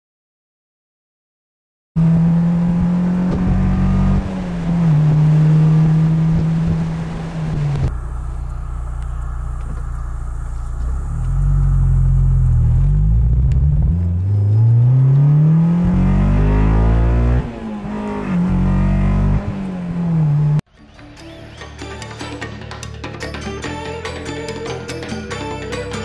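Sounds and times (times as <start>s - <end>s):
car engine revving: 2.0s - 20.7s.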